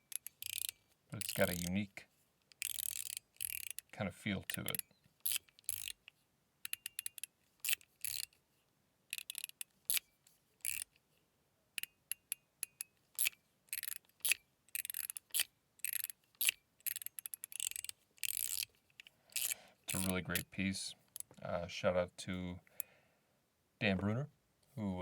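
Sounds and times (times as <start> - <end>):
metal fidget slider clicking: 0.0 - 1.8, 2.5 - 8.4, 9.1 - 11.0, 11.8 - 21.3.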